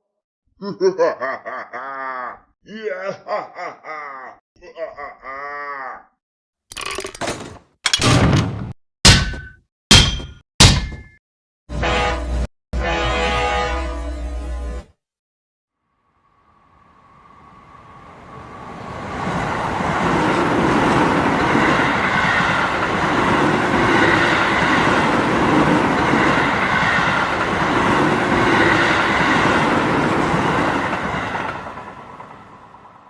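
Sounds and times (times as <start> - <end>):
diesel train engine on rails: 16.7 - 33.0.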